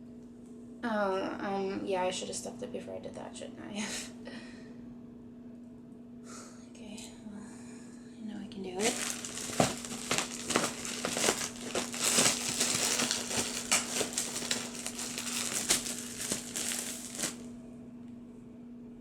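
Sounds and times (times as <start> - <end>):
stuffing rustling and crinkling: 8.7 - 17.5.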